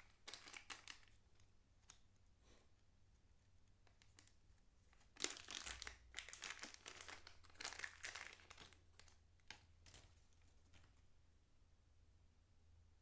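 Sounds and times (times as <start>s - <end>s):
packaging crinkling: 0.0s - 1.2s, 5.0s - 11.0s.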